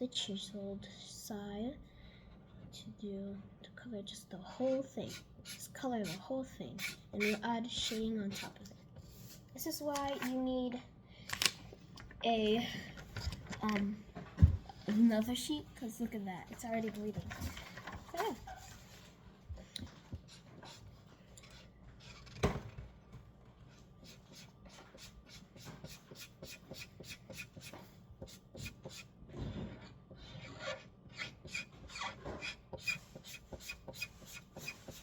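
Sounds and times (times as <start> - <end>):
marker scratching on paper: 4.6 - 9.4, 20.0 - 22.4, 23.7 - 29.1, 30.3 - 35.0.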